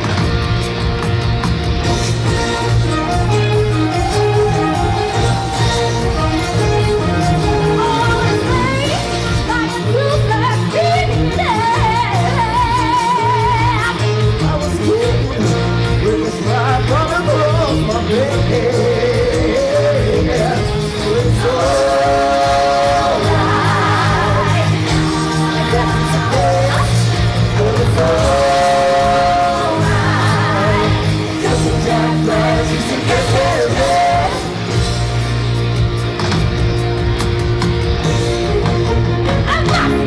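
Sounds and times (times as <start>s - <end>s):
rock band accompaniment: 0.0s - 40.0s
person singing: 2.3s - 35.1s.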